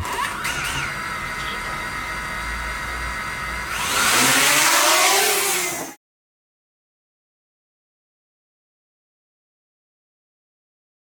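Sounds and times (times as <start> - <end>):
drone propellers whirring: 0.0 - 6.0.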